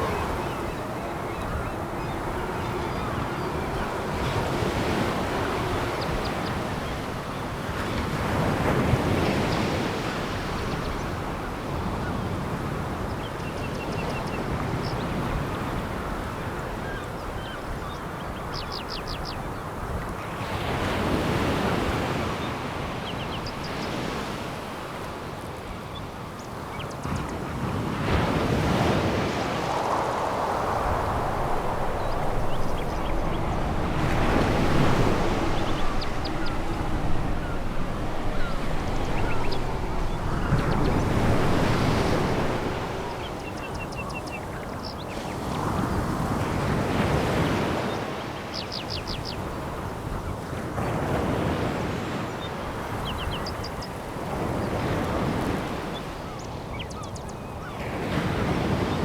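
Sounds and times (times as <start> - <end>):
waves washing over pebbles: 28.8 - 44.0.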